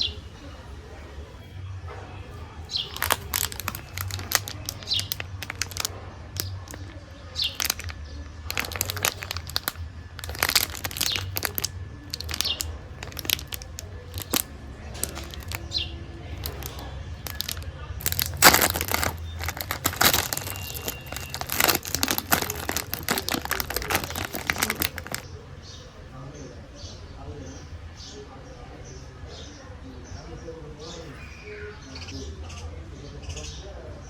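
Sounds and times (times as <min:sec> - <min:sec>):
snack wrapper crinkling: 0:02.8 - 0:15.8, 0:16.4 - 0:25.2.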